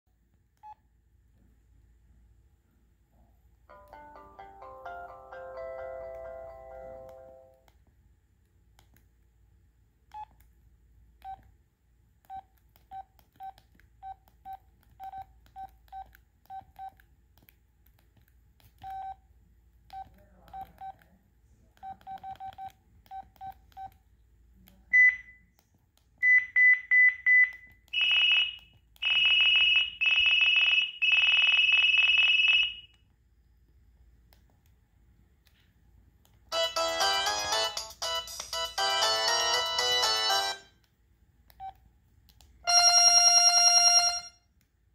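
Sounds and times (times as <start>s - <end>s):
melodic ringtone: 3.7s - 7.6s, 36.5s - 40.7s, 42.7s - 44.4s
cell phone beeps: 24.9s - 25.4s, 26.2s - 32.9s, 42.6s - 44.4s
pulsing electronic ringtone: 28.0s - 32.9s, 36.5s - 40.7s, 42.7s - 44.4s.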